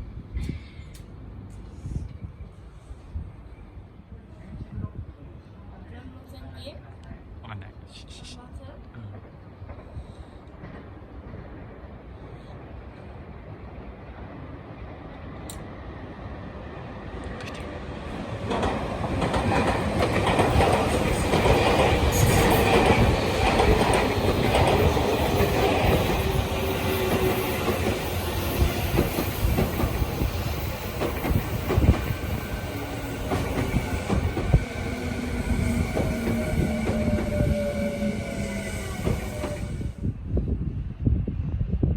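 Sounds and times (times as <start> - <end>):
train wheels clattering on rails: 17.2 - 38.1, 38.8 - 39.8.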